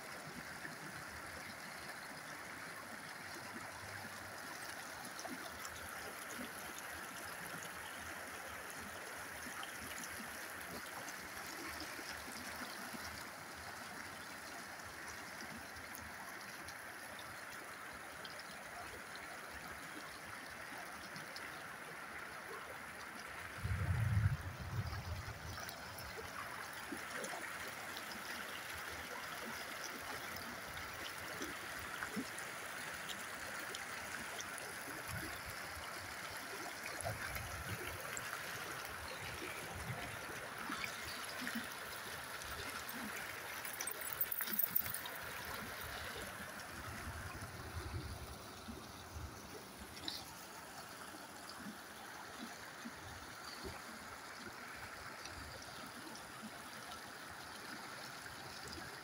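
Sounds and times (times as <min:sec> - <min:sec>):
low rumble: 0:23.6 - 0:25.0
floodwater rushing: 0:29.9 - 0:51.0.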